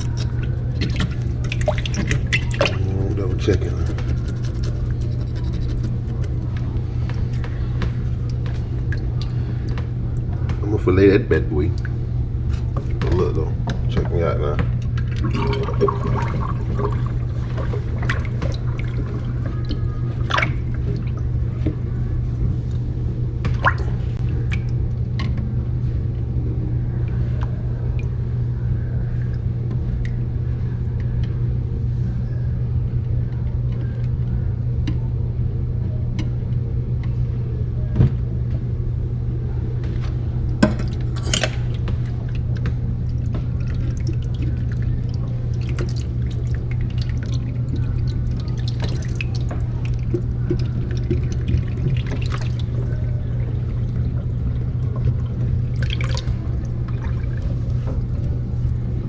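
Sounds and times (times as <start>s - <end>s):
tap water running into sink: 43.3s - 58.2s.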